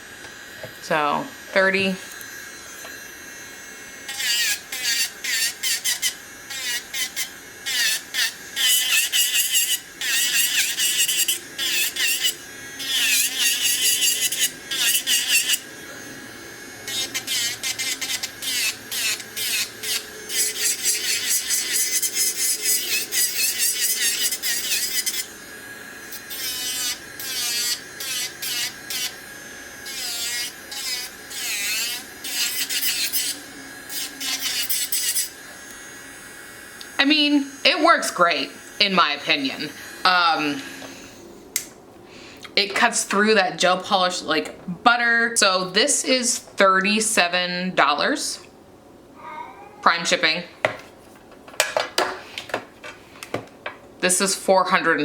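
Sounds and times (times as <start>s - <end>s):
bit grinding nail polish: 0.0s - 40.9s
electric nail drill whine: 0.0s - 41.4s.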